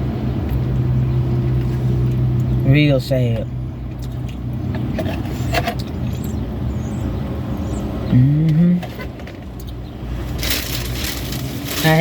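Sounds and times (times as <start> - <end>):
vehicle engine rumble: 0.0 - 12.0
person humming: 8.1 - 8.9.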